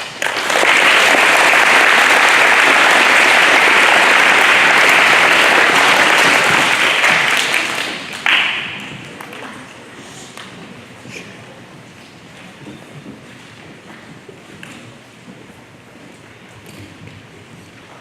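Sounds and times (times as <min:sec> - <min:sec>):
audience applauding: 0:00.0 - 0:09.6.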